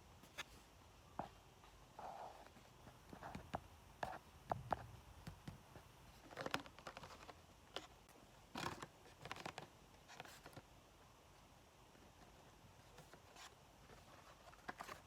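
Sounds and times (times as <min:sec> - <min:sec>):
plastic packaging rustling: 0:06.1 - 0:10.6.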